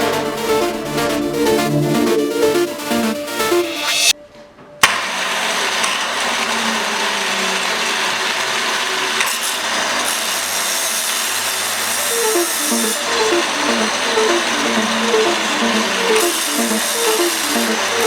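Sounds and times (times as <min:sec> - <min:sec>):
music: 0:00.0 - 0:05.0, 0:12.0 - 0:18.0.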